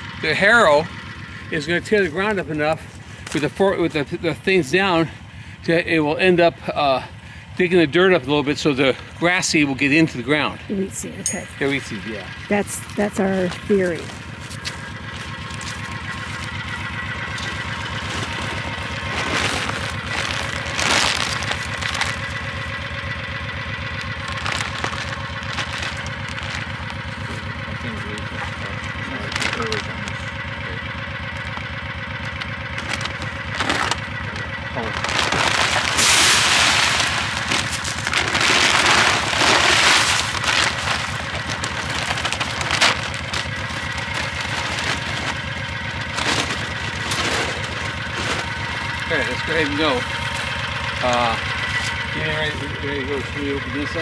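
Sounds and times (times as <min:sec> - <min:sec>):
vehicle engine idling: 0:00.0 - 0:54.0
rustling crunching noise: 0:11.5 - 0:30.5, 0:31.2 - 0:54.0
crackling noise: 0:14.2 - 0:27.2, 0:32.3 - 0:48.9.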